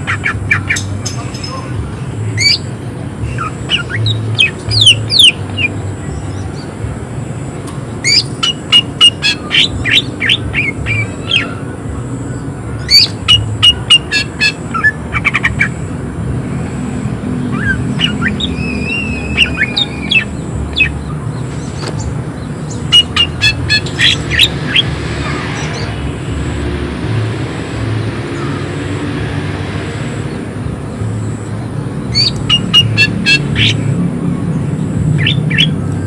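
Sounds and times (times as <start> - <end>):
bird singing sharp rapid notes: 3.3 - 6.8, 7.9 - 15.8, 17.4 - 26.0, 31.6 - 33.9, 34.6 - 35.8.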